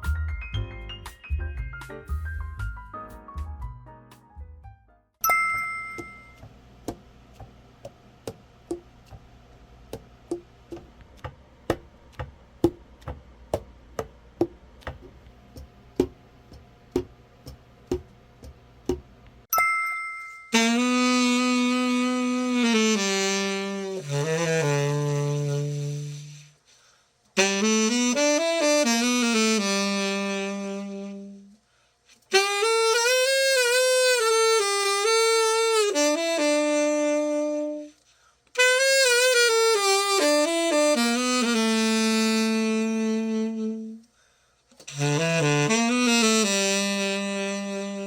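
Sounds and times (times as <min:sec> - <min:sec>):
solo tenor saxophone: 0:20.6 - 0:26.7, 0:27.4 - 0:31.6, 0:32.3 - 0:44.1, 0:44.8 - 0:48.0.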